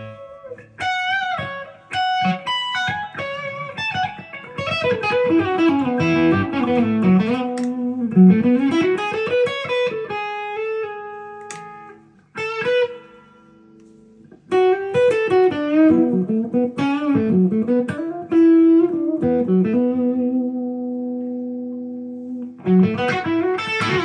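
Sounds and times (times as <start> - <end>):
electric guitar melodic run: 0.0 - 24.0
electric guitar chord ringing: 22.6 - 24.0.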